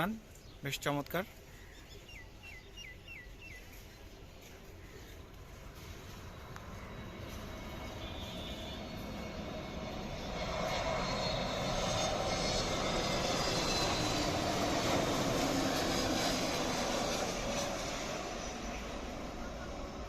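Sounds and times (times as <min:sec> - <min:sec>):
jet engine roar: 0:05.1 - 0:20.0.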